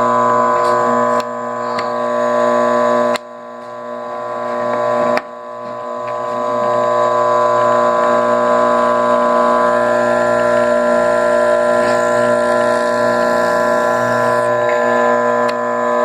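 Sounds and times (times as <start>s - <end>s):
drill press motor whining: 0.0s - 16.0s.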